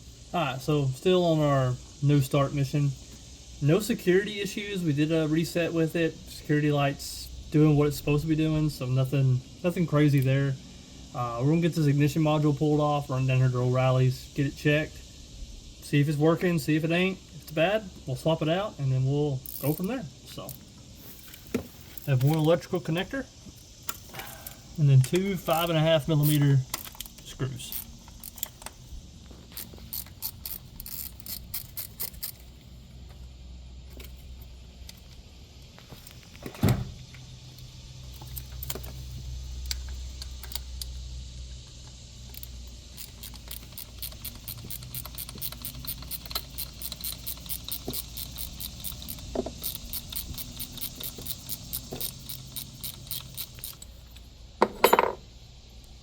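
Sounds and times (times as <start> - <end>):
ratchet clicking: 19.4 - 20.6, 23.8 - 28.8, 29.5 - 32.6, 37.6 - 53.9.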